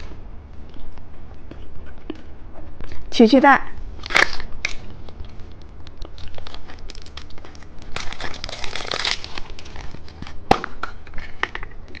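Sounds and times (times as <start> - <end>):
candy wrapper crinkling and tearing: 4.0 - 12.0.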